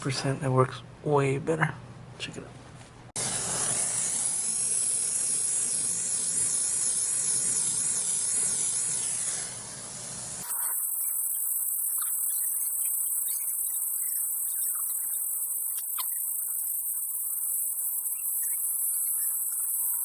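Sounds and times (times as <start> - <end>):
thin high hiss: 3.2 - 20.0
torch flame hissing: 3.2 - 20.0.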